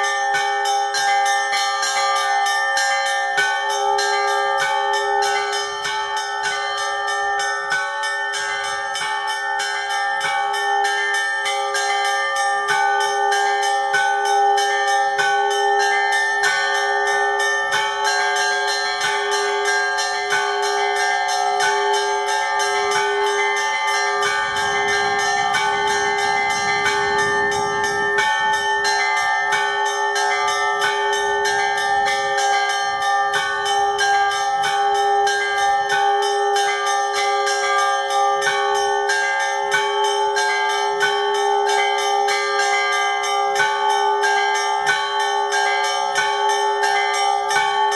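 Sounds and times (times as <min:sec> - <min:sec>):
larger bells ringing: 0:00.0 - 0:47.9
small bells struck quickly: 0:00.0 - 0:47.9.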